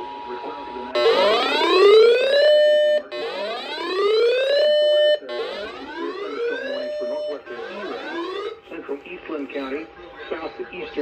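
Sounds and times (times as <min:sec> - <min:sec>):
electronic whooping alert tone: 0:01.0 - 0:08.6.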